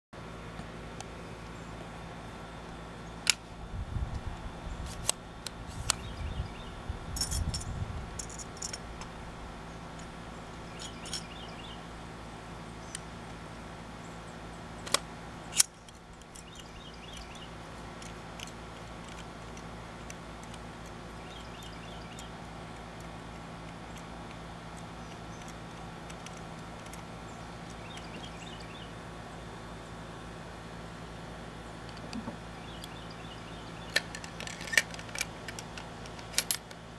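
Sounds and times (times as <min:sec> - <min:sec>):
steady hum: 0:00.2 - 0:36.9
metallic rifle parts clicking: 0:33.8 - 0:36.8.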